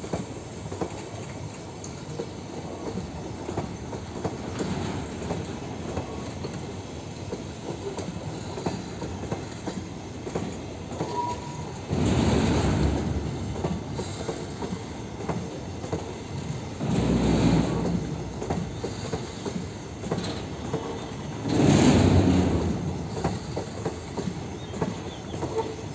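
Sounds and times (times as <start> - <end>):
train clattering: 0.0 - 25.9
train wheels rumbling and clicking: 0.0 - 25.9.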